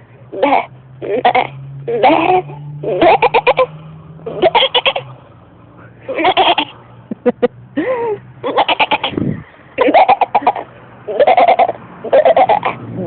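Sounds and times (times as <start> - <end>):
woman imitating goat bleats: 0.4 - 2.3.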